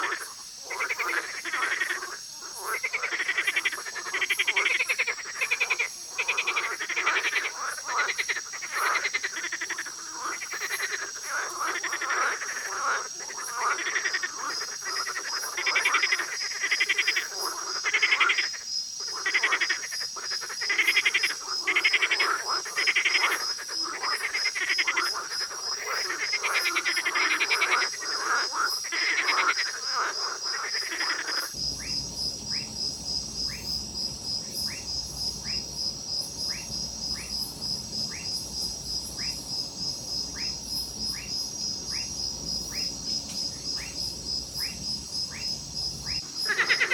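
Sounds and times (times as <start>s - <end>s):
frogs croaking: 0.0s - 46.9s
low hum: 31.6s - 46.2s.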